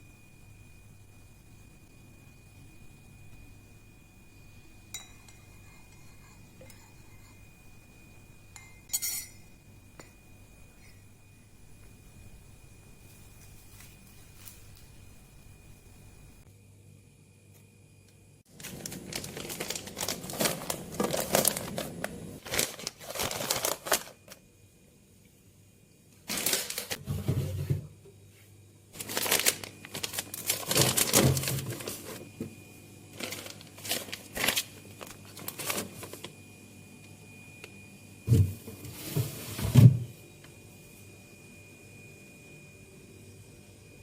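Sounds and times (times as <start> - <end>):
plastic bags crinkling: 18.5 - 24.4, 26.3 - 27.0, 29.0 - 32.2, 33.1 - 36.3.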